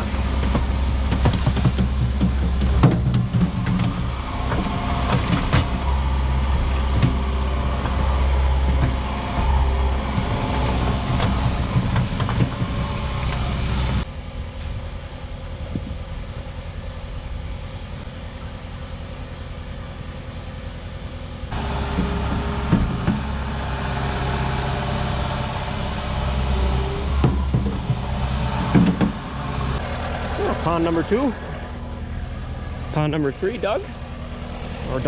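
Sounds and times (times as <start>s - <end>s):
skid steer engine running: 0.0s - 35.0s
bucket knocks and clanks: 0.3s - 6.0s.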